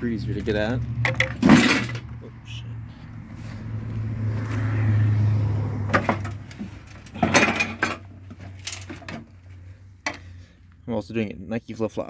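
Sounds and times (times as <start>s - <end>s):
metal parts clicking and clanking: 0.4s - 2.2s, 5.9s - 10.3s.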